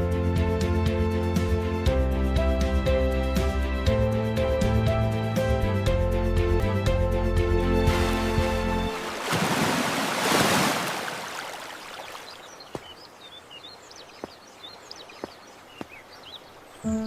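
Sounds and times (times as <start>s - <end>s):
rushing water-like noise: 7.9s - 16.8s.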